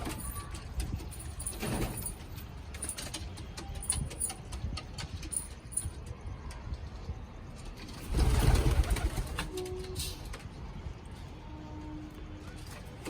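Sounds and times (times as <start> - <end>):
pigeons clicking and rustling: 0.0 - 6.6, 7.6 - 10.5.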